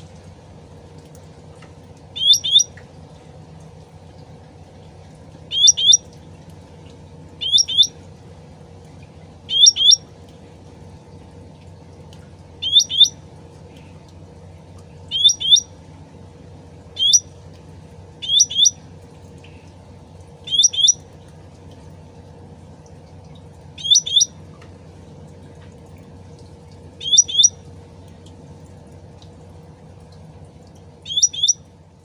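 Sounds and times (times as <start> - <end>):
bird double-note calls: 2.1 - 2.8, 5.5 - 6.2, 7.4 - 8.0, 9.5 - 10.1, 12.6 - 13.2, 15.1 - 15.8, 16.9 - 17.4, 18.2 - 18.8, 20.4 - 21.1, 23.8 - 24.4, 27.0 - 27.6, 31.0 - 31.7.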